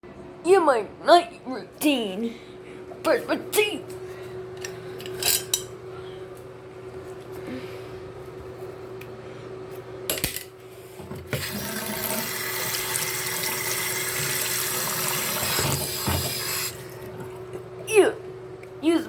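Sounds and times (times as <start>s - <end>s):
tap water running into sink: 11.2s - 17.5s.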